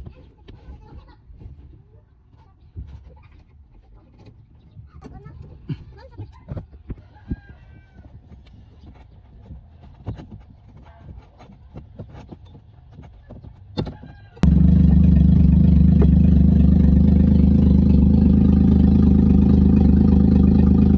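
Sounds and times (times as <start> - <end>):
car engine idling: 14.4 - 20.9.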